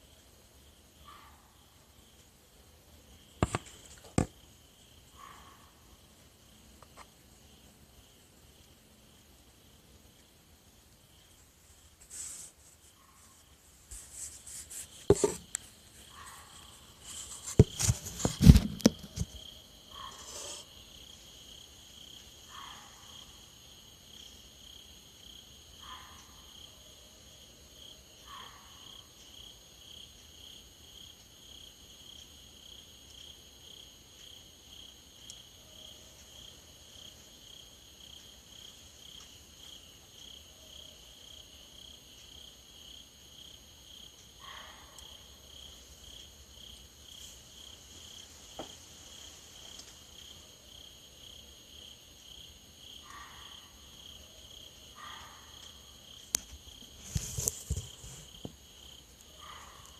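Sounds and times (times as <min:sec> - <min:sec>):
insects trilling: 0:03.0 - 0:59.9
rustling: 0:11.3 - 0:19.4, 0:56.3 - 0:58.4.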